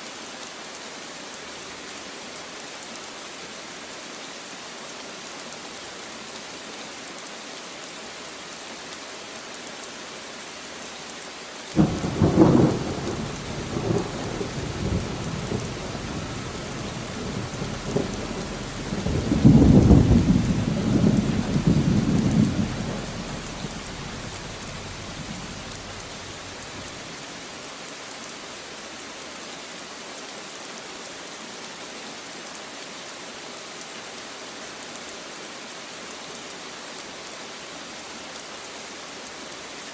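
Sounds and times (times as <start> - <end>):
steady rain falling: 0.0 - 39.9
thunder rumbling: 11.8 - 27.2.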